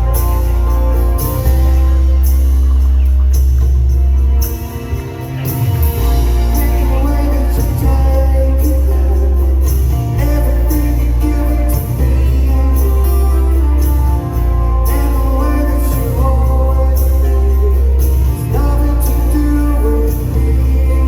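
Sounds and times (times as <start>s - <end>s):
live rock band playing: 0.0s - 21.0s.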